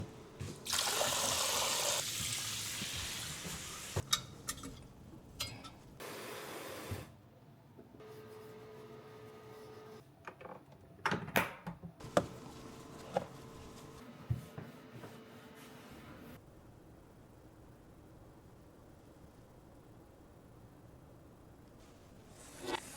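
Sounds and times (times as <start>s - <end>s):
water running: 0.4s - 4.1s
faint steady hum: 16.2s - 22.9s.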